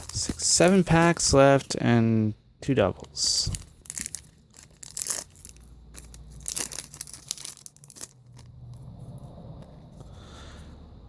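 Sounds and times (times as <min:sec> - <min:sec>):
foil wrapper crinkling and tearing: 0:00.0 - 0:01.3, 0:03.4 - 0:08.8.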